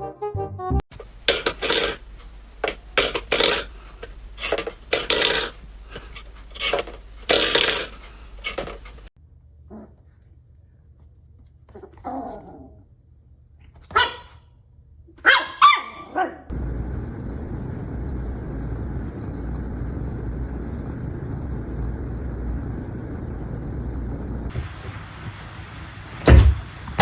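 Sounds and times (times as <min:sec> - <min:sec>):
dog barking: 0:13.9 - 0:14.4, 0:15.2 - 0:16.5
steady low noise: 0:16.5 - 0:26.7.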